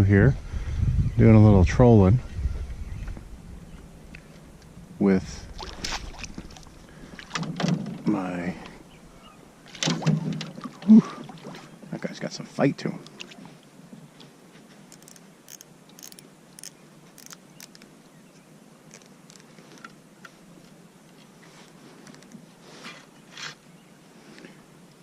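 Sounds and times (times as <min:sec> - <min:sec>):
rustle: 0:02.2 - 0:25.0
fishing gear clicks and taps: 0:14.9 - 0:17.9, 0:18.9 - 0:20.0.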